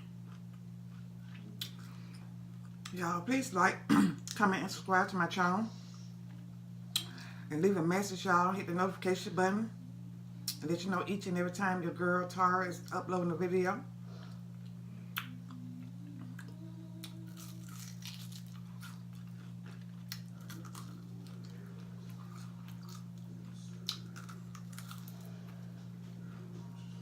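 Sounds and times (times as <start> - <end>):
chewing crunchy fried food: 0.0 - 3.0, 14.2 - 26.4
low electrical hum: 0.0 - 27.0.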